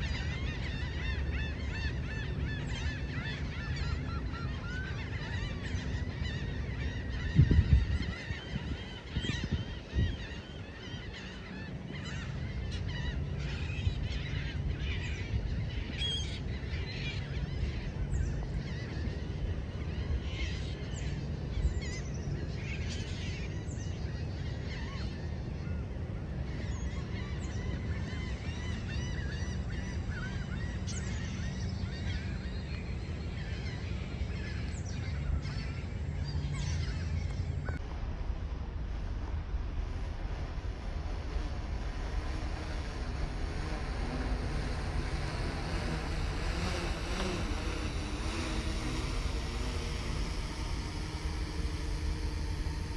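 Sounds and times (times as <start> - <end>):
flock of birds calling in alarm: 0.0 - 37.8
steady low hum: 0.0 - 52.9.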